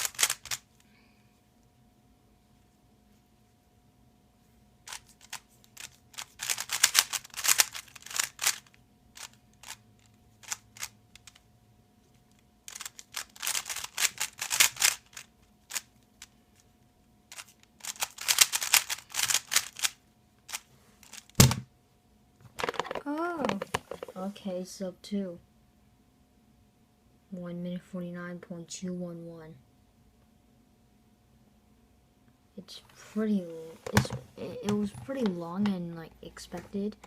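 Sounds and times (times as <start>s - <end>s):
puzzle cube clicking: 0.0s - 0.6s, 4.9s - 9.8s, 10.4s - 11.4s, 12.7s - 15.9s, 17.3s - 21.6s, 22.5s - 24.2s.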